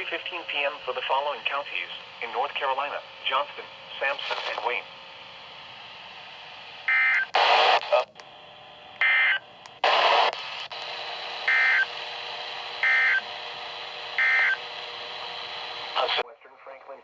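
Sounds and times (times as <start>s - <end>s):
radio static hiss bursts: 4.0s - 4.8s, 7.3s - 8.0s, 9.8s - 11.9s
two-tone modem warble chirps: 6.9s - 7.2s, 11.5s - 11.9s, 12.8s - 13.3s, 14.2s - 14.6s.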